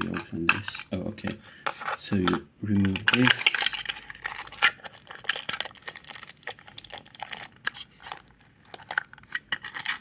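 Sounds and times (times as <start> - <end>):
toy packaging crinkling: 2.8 - 10.0.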